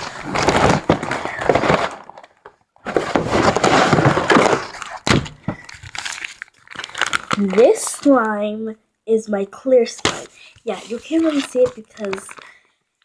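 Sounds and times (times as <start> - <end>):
slime crackling and crinkling: 0.0 - 2.6, 3.3 - 8.5, 10.1 - 12.6.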